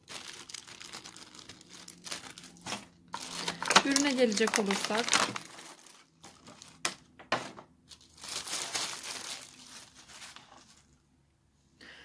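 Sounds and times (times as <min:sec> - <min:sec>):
crinkly packaging rustling: 0:00.0 - 0:11.1.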